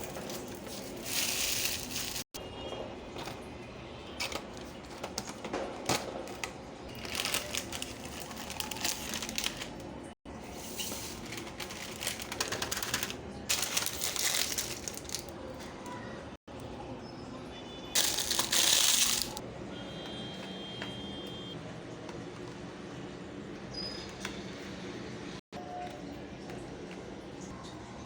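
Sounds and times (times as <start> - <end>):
snack packaging crinkling: 0.0 - 2.4, 6.2 - 10.0, 10.8 - 15.4, 18.0 - 19.4.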